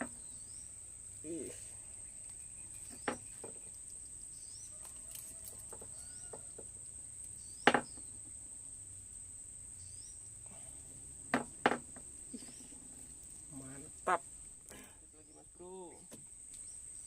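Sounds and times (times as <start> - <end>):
short insect chirps: 0.0 - 11.6
insects droning: 0.0 - 17.0.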